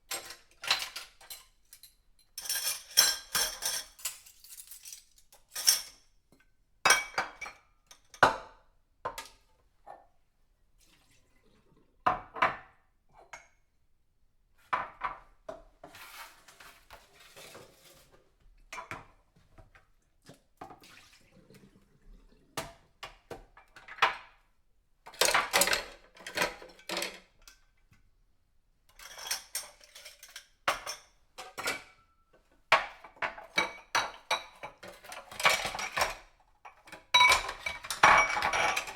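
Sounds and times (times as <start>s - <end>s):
dishes clinking and clattering: 0.1s - 6.1s, 6.9s - 9.4s, 25.1s - 27.6s, 28.9s - 38.9s
rinsing water: 20.7s - 22.6s.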